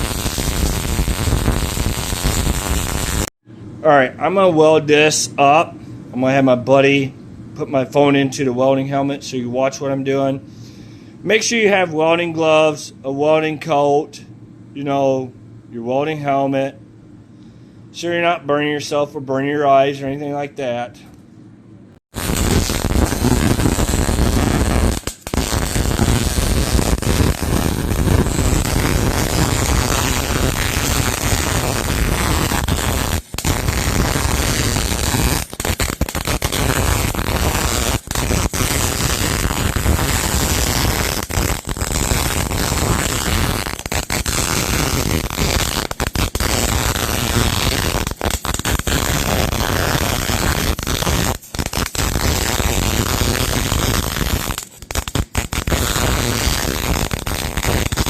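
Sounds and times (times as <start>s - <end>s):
welding arc crackling: 0.0s - 3.3s, 22.1s - 58.0s.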